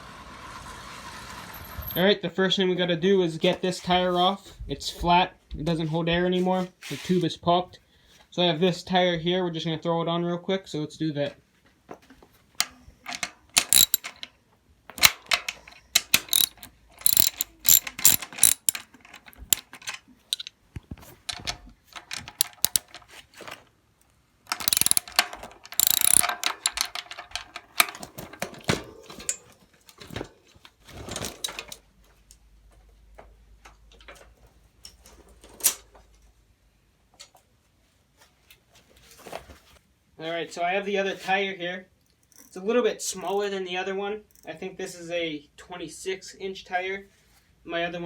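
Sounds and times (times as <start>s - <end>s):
metallic clicks and rattles: 12.6s - 14.3s, 14.9s - 20.6s, 21.2s - 23.1s, 24.5s - 29.4s
freewheel ratchet clicking: 13.6s - 14.1s, 16.0s - 19.7s, 22.0s - 23.0s, 24.5s - 27.1s.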